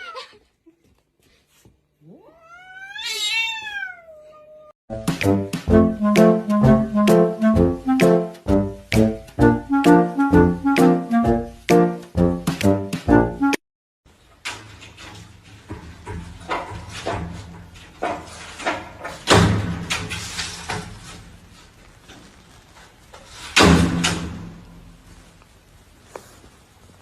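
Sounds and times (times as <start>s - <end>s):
knocks and clatters: 14.3s - 21.3s.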